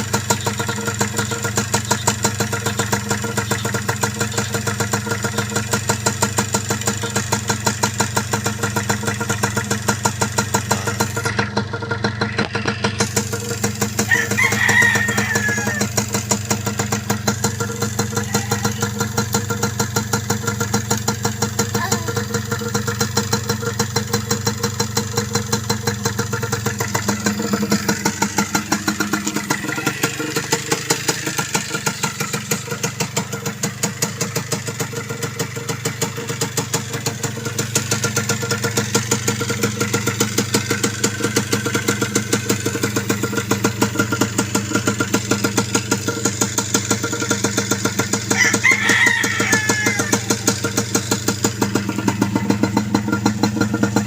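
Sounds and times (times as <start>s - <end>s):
two-stroke engine idling: 0.0s - 54.0s
rooster crowing: 14.0s - 16.0s, 18.2s - 18.9s, 48.2s - 50.7s.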